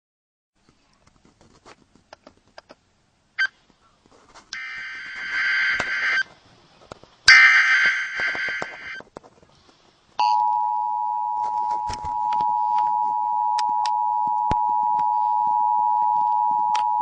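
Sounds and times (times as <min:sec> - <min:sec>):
buzzing digital tone bursts: 0:04.6 - 0:06.2, 0:07.3 - 0:09.0.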